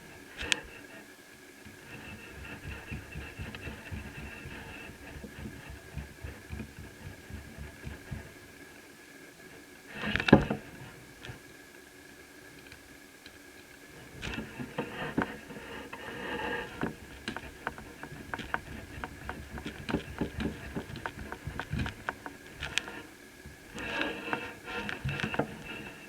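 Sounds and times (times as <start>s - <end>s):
scraping on laptop fan: 1.7s - 8.8s, 9.5s - 11.4s, 13.9s - 26.0s
small clicks and taps from tools: 16.7s - 25.8s.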